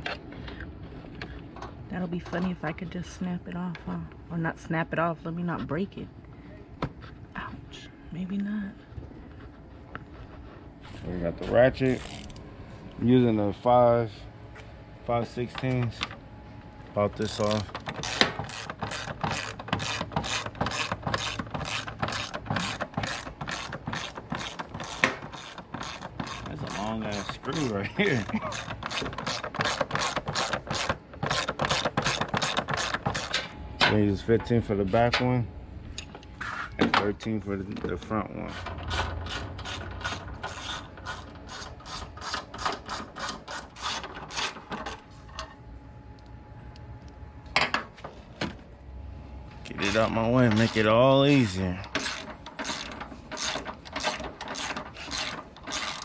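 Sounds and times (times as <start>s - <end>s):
hand ratchet clicking: 17.4s - 33.4s, 38.5s - 44.6s, 51.9s - 56.0s.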